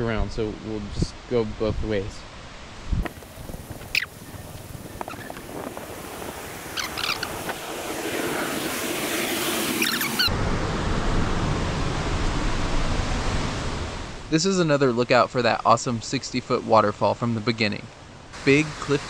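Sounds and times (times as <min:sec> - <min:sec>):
waterfall roaring: 0:03.1 - 0:10.3.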